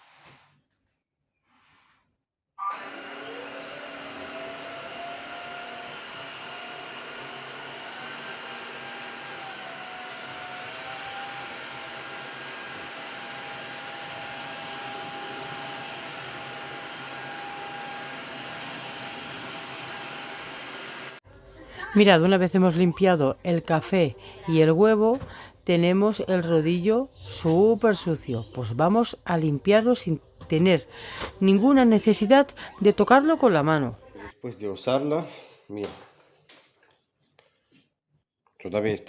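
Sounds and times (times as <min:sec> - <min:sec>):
vacuum motor whining: 0:02.6 - 0:21.2.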